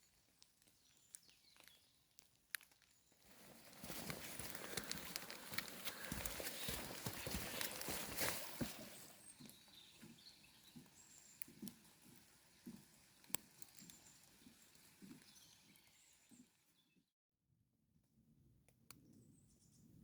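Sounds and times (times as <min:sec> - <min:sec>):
footsteps on a trail: 0:02.6 - 0:16.4.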